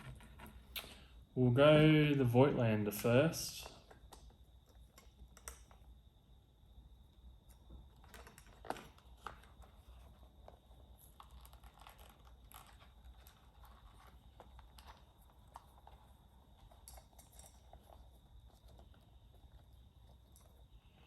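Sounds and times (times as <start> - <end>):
rustles and small clicks: 7.4 - 21.0.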